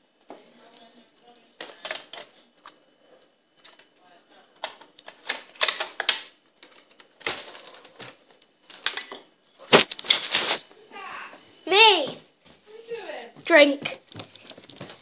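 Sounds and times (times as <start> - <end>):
household objects clicking and rustling: 1.2 - 10.7, 13.0 - 15.0.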